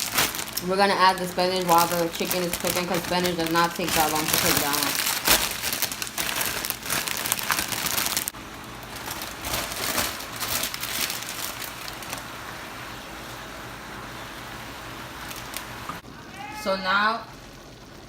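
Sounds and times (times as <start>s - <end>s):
spinach crackling in hot pan: 0.0s - 16.0s.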